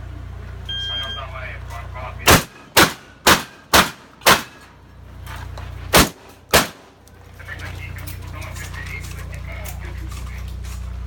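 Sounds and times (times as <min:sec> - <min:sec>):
shotgun shots: 0:02.3 - 0:04.7, 0:05.9 - 0:07.0.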